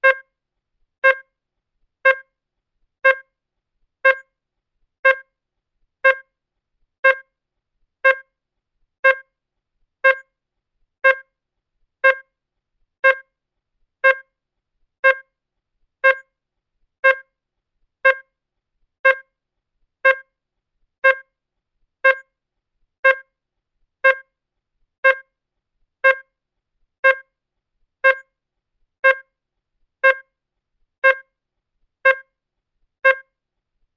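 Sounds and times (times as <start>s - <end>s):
digital clock ticking: 0.0s - 0.2s, 1.0s - 1.2s, 2.0s - 2.2s, 3.0s - 3.2s, 4.0s - 4.2s, 5.0s - 5.2s, 6.0s - 6.3s, 7.0s - 7.2s, 8.0s - 8.2s, 9.0s - 9.2s, 10.0s - 10.2s, 11.0s - 11.2s, 12.0s - 12.2s, 13.0s - 13.2s, 14.0s - 14.2s, 15.0s - 15.2s, 16.0s - 16.2s, 17.0s - 17.2s, 18.0s - 18.2s, 19.0s - 19.2s, 20.0s - 20.2s, 21.0s - 21.2s, 22.0s - 22.2s, 23.0s - 23.3s, 24.0s - 24.2s, 25.0s - 25.2s, 26.0s - 26.2s, 27.0s - 27.2s, 28.0s - 28.2s, 29.0s - 29.2s, 30.0s - 30.2s, 31.0s - 31.2s, 32.0s - 32.2s, 33.0s - 33.2s.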